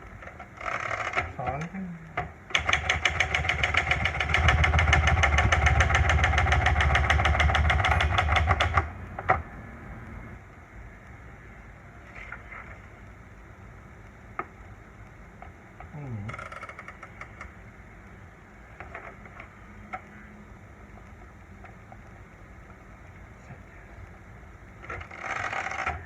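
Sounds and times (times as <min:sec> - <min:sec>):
steady background hum: 0:00.0 - 0:26.0
typewriter mechanism rattle: 0:02.5 - 0:08.9
typewriter key strikes: 0:06.4 - 0:08.9.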